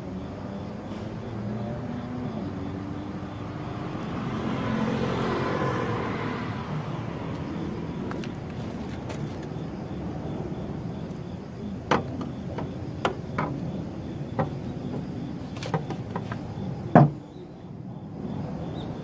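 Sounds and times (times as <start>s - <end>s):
steady background noise: 0.0s - 19.0s
sharp knocks and clicks: 11.8s - 17.2s.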